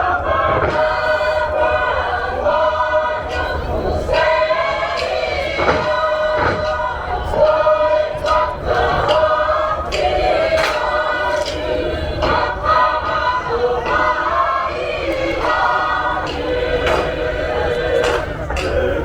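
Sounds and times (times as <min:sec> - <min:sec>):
choir singing in harmony: 0:00.0 - 0:19.0.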